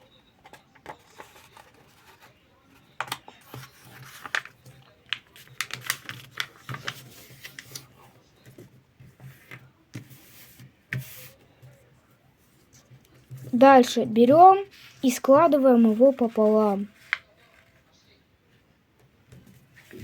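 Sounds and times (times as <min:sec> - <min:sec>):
paper being folded and creased: 0:03.4 - 0:04.5, 0:05.1 - 0:07.9, 0:15.9 - 0:17.8.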